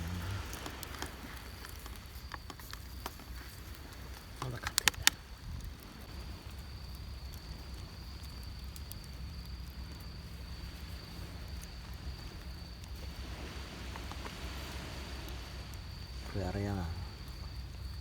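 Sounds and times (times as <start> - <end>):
campfire crackling: 0.0 - 18.0
insect trill: 0.0 - 18.0
surf rumbling: 0.0 - 18.0.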